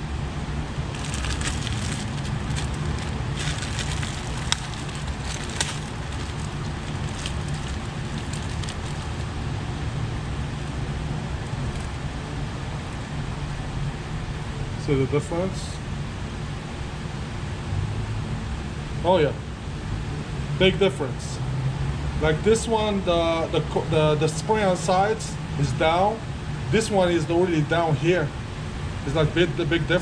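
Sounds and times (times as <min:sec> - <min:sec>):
steady low hum: 0:00.0 - 0:14.1
plastic clicks and rustling: 0:00.9 - 0:09.3, 0:11.5 - 0:12.0.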